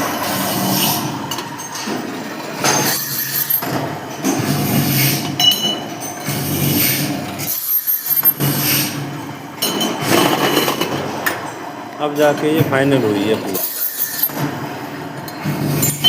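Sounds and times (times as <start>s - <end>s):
workshop machine noise: 0.0s - 16.0s.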